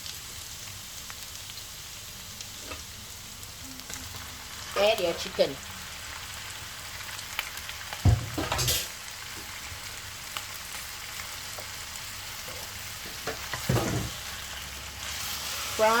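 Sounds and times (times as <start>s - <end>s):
chicken sizzling in hot oil: 0.0s - 16.0s
thump and clatter: 8.0s - 8.8s.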